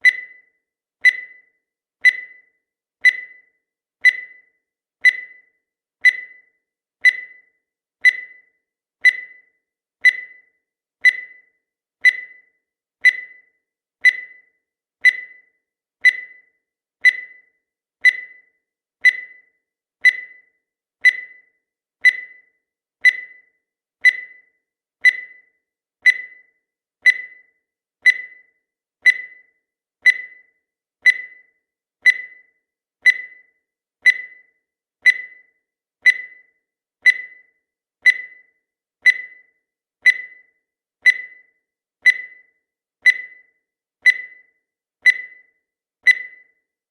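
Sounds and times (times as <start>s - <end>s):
short high beeps: 46.1s - 46.5s.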